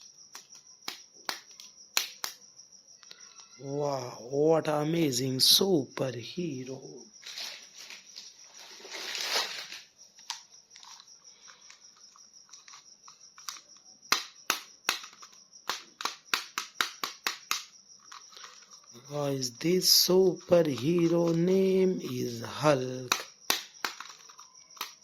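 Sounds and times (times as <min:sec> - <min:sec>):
plastic packaging crinkling: 0:07.2 - 0:13.8, 0:23.1 - 0:25.0
sharp plastic clicks: 0:11.7 - 0:18.9, 0:20.4 - 0:22.4, 0:23.0 - 0:25.0.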